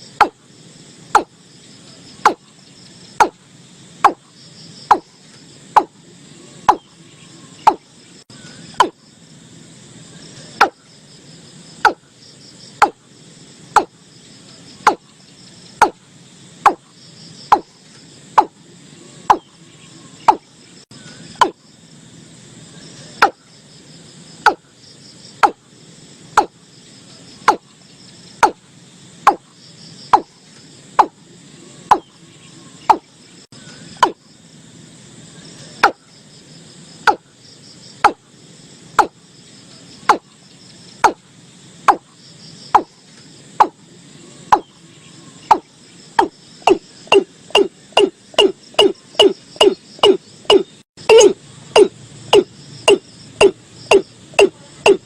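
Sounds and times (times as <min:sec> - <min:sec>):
crickets chirping: 0:00.0 - 0:55.0
bird calling short sharp notes: 0:45.5 - 0:53.0.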